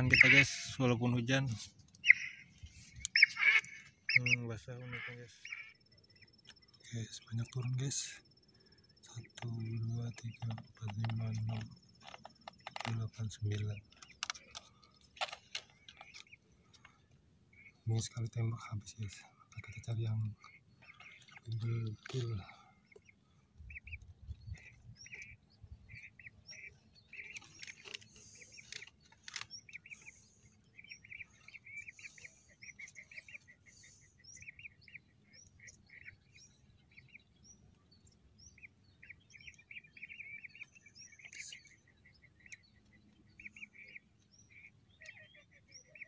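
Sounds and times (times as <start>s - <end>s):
whistling ducks calling: 0.0s - 1.4s, 2.0s - 8.1s, 24.6s - 29.0s, 29.6s - 37.3s, 38.5s - 46.0s.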